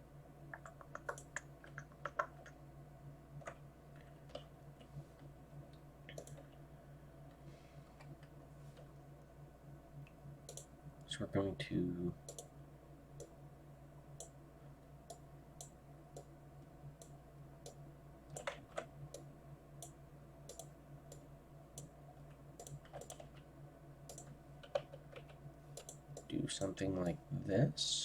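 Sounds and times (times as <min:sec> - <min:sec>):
faint low hum: 0:00.0 - 0:28.0
computer mouse clicking: 0:00.5 - 0:02.6, 0:03.4 - 0:04.9, 0:05.7 - 0:06.6, 0:10.5 - 0:10.7, 0:12.2 - 0:12.5, 0:14.2 - 0:14.4, 0:15.1 - 0:16.3, 0:17.0 - 0:21.9, 0:22.6 - 0:23.5, 0:24.1 - 0:26.7.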